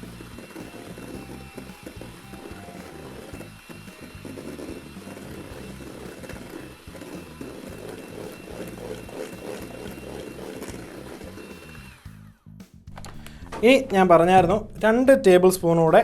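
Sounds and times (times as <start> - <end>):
electric mixer whining: 0.0 - 12.4.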